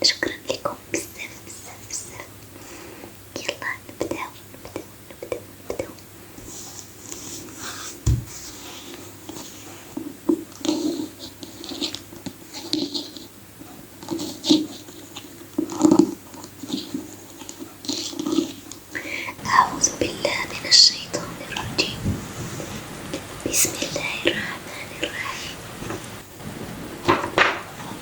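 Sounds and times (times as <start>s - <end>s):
scratching and tapping: 7.1s - 8.6s.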